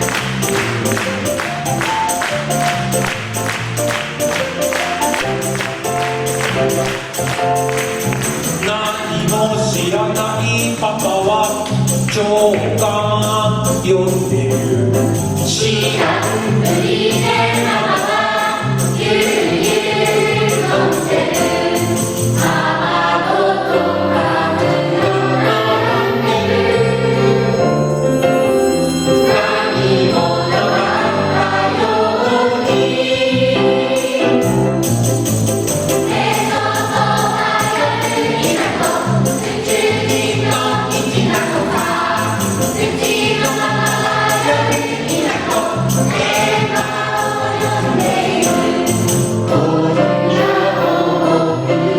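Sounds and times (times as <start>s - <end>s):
steady percussive beat: 0.0s - 23.0s, 33.9s - 49.8s
instrumental accompaniment: 0.0s - 51.9s
children's song sung in chorus: 15.5s - 27.6s, 29.2s - 34.6s, 36.0s - 51.9s.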